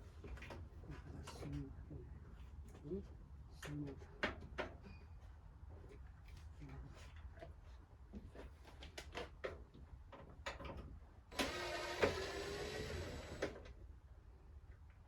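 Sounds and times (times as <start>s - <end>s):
small electric motor running: 11.4s - 13.6s.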